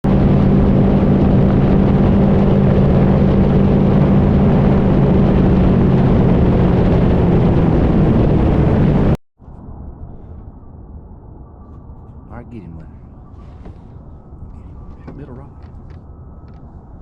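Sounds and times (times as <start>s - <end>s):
boat motor hum: 0.1s - 9.2s.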